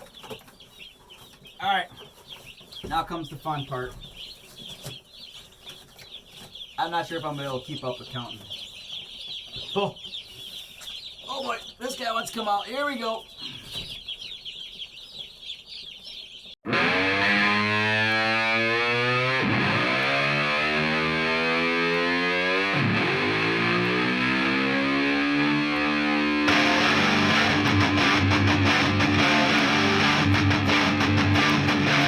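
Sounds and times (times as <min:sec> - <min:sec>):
baby chicks peeping: 0:00.0 - 0:32.0
distorted electric guitar music: 0:16.6 - 0:32.0.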